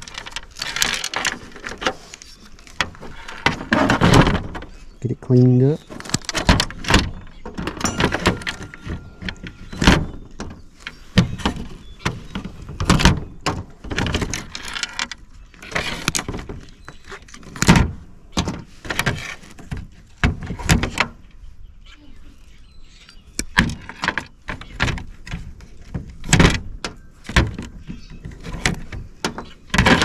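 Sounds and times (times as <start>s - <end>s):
metal parts clanking: 6.2s - 11.7s
metal scraping: 7.6s - 11.8s.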